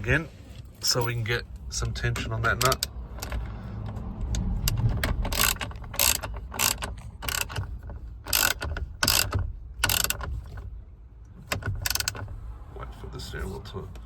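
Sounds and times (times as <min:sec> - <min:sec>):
ratchet wrench clicking: 0:02.2 - 0:03.5, 0:04.2 - 0:10.4, 0:11.8 - 0:12.2.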